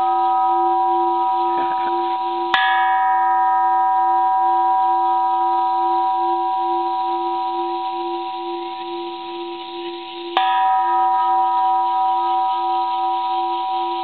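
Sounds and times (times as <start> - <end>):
temple bell ringing: 0.0 - 14.0.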